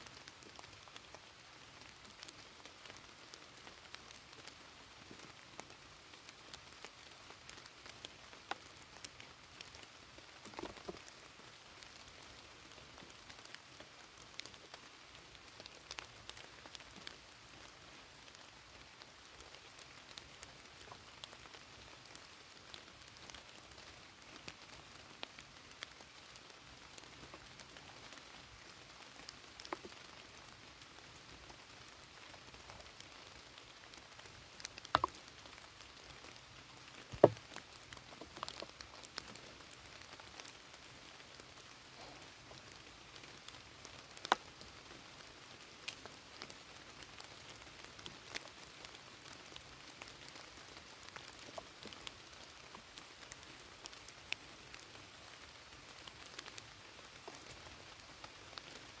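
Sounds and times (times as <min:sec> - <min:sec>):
light rain falling: 0:00.0 - 0:59.0
raindrops tapping: 0:34.6 - 0:35.9, 0:36.9 - 0:39.2.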